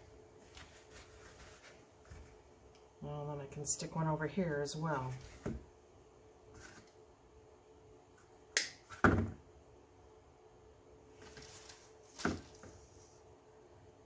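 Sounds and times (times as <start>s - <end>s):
soft rustle: 0.0s - 2.6s, 11.1s - 13.3s.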